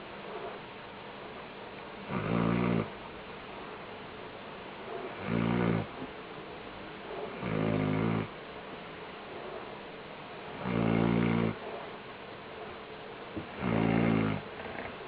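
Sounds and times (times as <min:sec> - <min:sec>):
pet snoring: 0:02.1 - 0:03.0, 0:05.0 - 0:06.0, 0:07.2 - 0:08.4, 0:10.6 - 0:11.7, 0:13.4 - 0:15.0.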